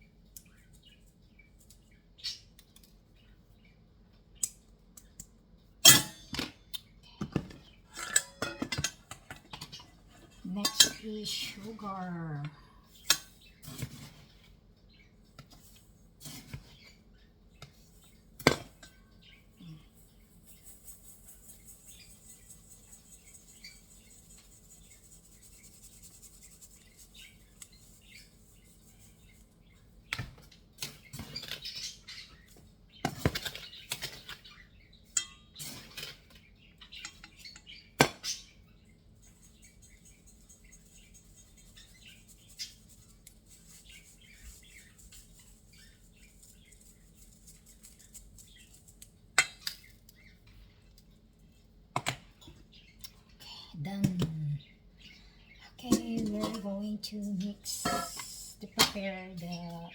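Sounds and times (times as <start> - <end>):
utensils and bowls clinking: 7.2 - 12.0, 55.9 - 56.6, 57.4 - 59.1.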